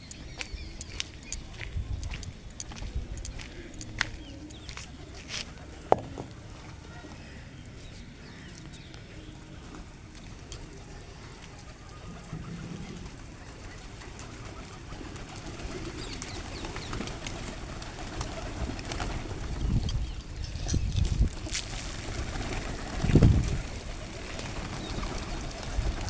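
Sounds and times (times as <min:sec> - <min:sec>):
light clicks and taps: 0:00.0 - 0:04.9
pigeons cooing: 0:11.8 - 0:20.5.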